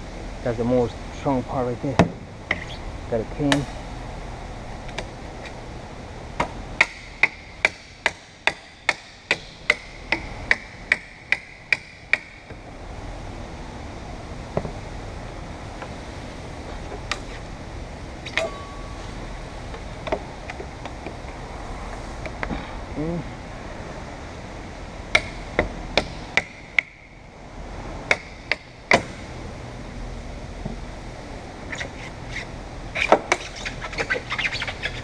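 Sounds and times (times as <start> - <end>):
thin squeak: 18.2 - 19.2, 31.7 - 35.0.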